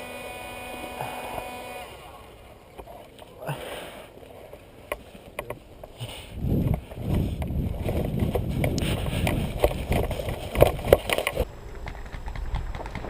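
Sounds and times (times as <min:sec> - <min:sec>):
rustling and scuffing of gear: 0:04.0 - 0:13.0
small knocks and clicks: 0:04.5 - 0:06.0, 0:06.6 - 0:13.0.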